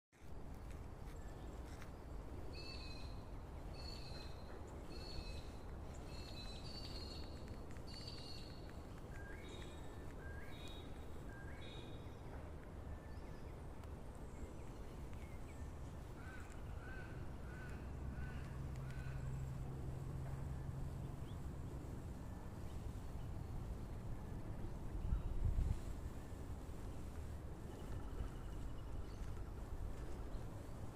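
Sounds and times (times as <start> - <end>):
wild birds calling: 16.0 - 19.8.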